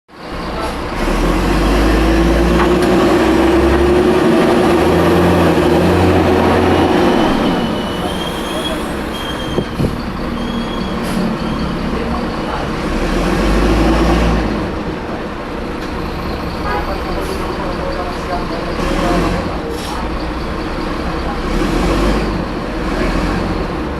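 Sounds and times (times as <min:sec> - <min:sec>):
diesel engine pulling hard: 0:00.2 - 0:23.9
raspy exhaust: 0:00.3 - 0:23.9
belt squealing: 0:07.2 - 0:11.8.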